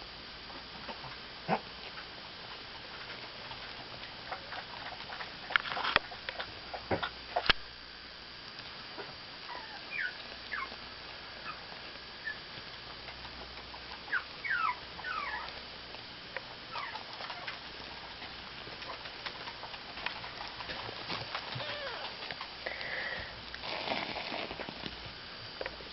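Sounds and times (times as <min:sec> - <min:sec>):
kittens mewing: 0:21.5 - 0:23.2.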